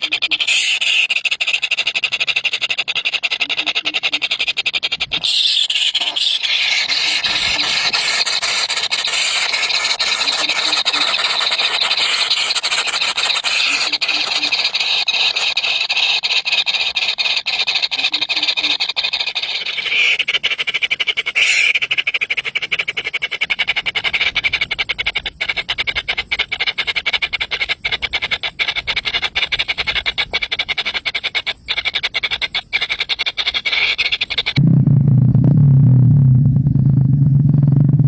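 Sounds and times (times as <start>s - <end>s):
baby birds cheeping: 0.0s - 34.6s.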